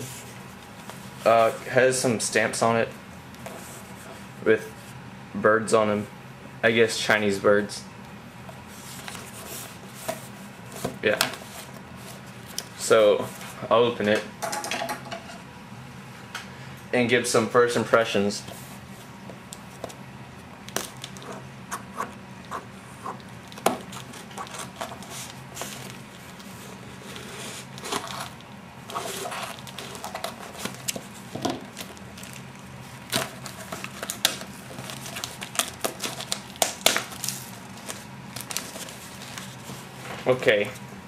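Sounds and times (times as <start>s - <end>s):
packaging crinkling and tearing: 23.2s - 39.9s.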